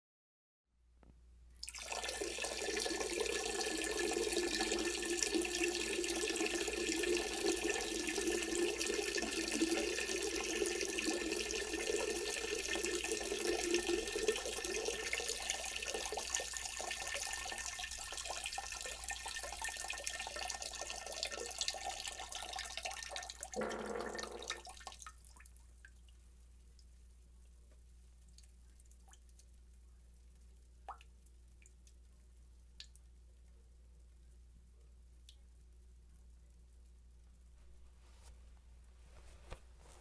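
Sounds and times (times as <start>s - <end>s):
man urinating into toilet: 1.6s - 26.1s.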